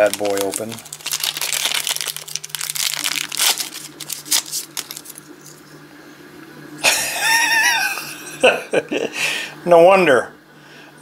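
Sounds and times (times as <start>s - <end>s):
plastic bag crinkling and ripping: 0.0s - 5.6s.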